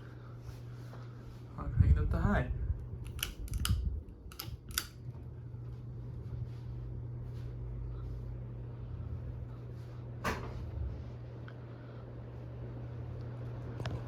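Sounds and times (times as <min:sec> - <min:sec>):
ceiling fan motor humming: 0:00.0 - 0:14.0
pull-chain switch clicking: 0:03.0 - 0:05.0.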